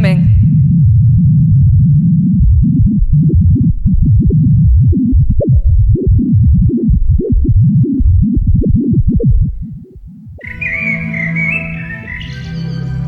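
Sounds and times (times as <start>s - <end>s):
low electronic throbbing: 0.0s - 12.1s.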